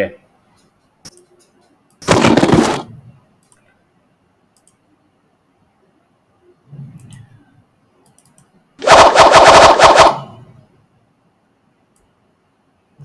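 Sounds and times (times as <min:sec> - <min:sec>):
mouse and keyboard clicks: 0:01.0 - 0:02.0, 0:08.0 - 0:08.6
faint low murmur: 0:02.9 - 0:08.8.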